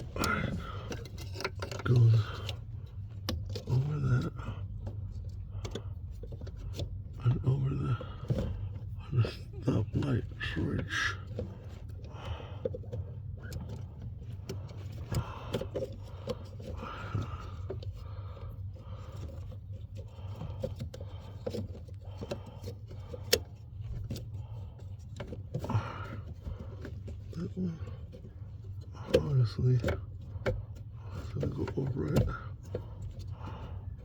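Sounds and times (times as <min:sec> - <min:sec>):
plastic and metal parts clicking: 0:00.0 - 0:03.8
steady low hum: 0:00.0 - 0:34.0.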